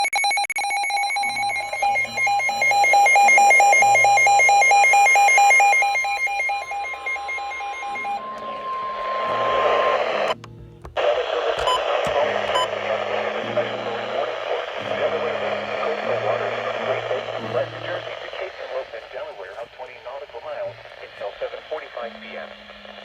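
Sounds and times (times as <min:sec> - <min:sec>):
rapid electronic alarm beeping: 0:00.0 - 0:10.4, 0:11.6 - 0:23.0
steady high alert tone: 0:00.7 - 0:10.4, 0:11.7 - 0:23.0
radio hiss: 0:01.2 - 0:10.4, 0:11.0 - 0:23.0.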